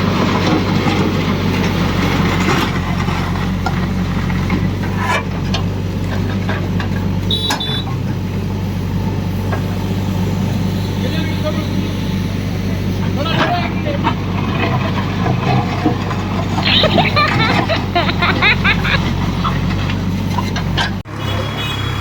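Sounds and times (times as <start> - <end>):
diesel engine droning: 0.0 - 22.0
short high beeps: 8.5 - 13.2.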